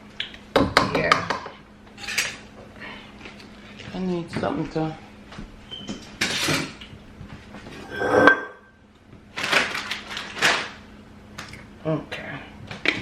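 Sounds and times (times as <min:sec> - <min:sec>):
dishes and utensils clattering: 0:07.8 - 0:08.7.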